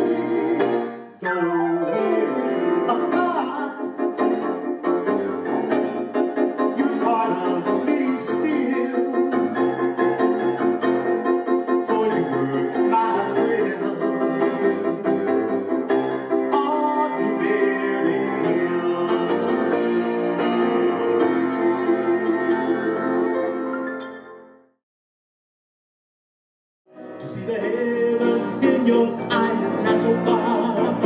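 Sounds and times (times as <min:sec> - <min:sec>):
instrumental keyboard music: 0:00.0 - 0:24.8, 0:26.9 - 0:31.0.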